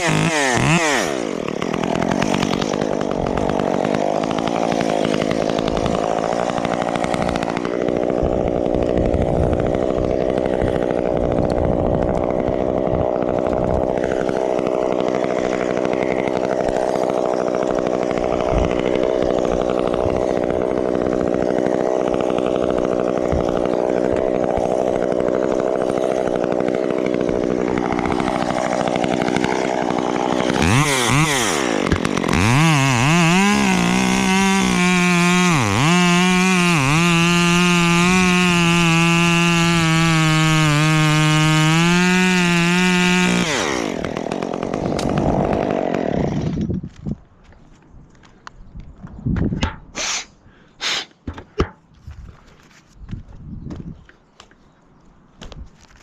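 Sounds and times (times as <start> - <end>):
chainsaw running at high revs: 0.0 - 47.0.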